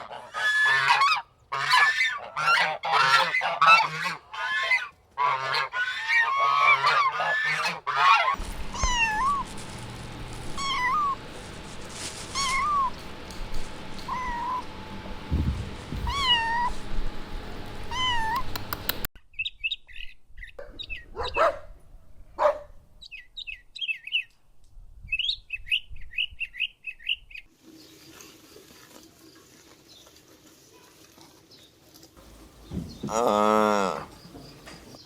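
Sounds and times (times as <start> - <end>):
cat meowing: 8.7 - 9.4, 10.6 - 11.2, 12.3 - 13.0, 14.1 - 14.6, 16.0 - 16.8, 17.9 - 18.5
small bird chirping: 12.2 - 13.0, 32.2 - 35.0.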